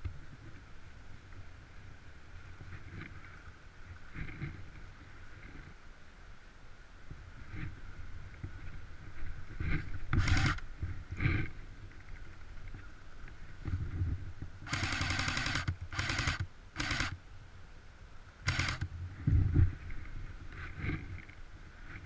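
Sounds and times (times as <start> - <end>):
airsoft gun firing bursts: 10.2 - 10.6, 14.7 - 17.2, 18.5 - 18.9.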